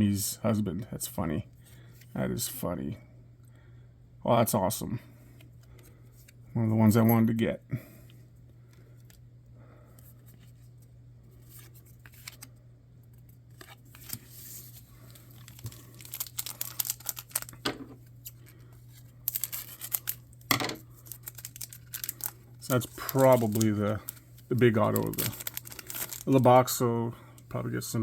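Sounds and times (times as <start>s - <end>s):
low steady hum: 0.0s - 28.0s
packaging rustling and tearing: 13.5s - 26.6s.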